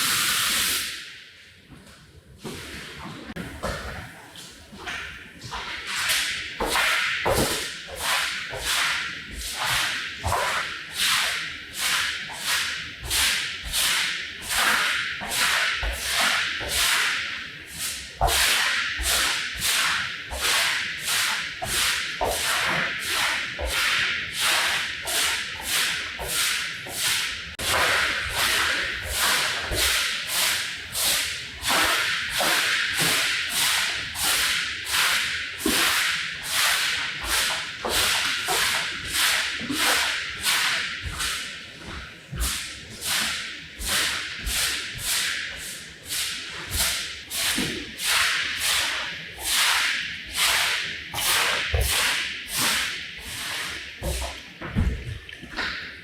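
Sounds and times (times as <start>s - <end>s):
tool scraping a rug: 17.8s - 54.9s.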